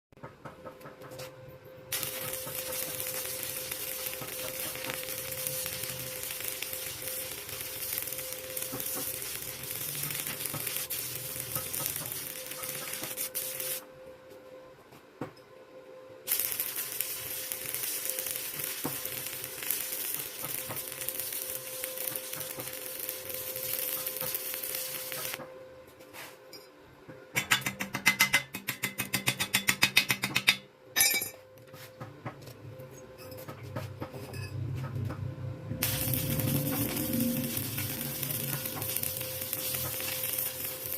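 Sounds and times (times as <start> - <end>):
welding arc crackling: 1.9 - 13.8, 16.3 - 25.4, 35.8 - 40.9.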